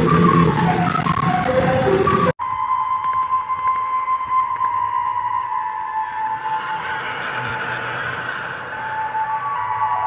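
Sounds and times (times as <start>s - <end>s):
noisy passage: 4.2s - 10.0s.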